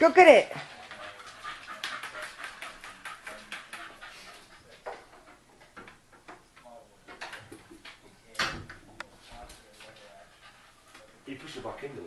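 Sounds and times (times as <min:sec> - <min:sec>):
dog panting: 0:00.0 - 0:06.0, 0:09.3 - 0:12.0.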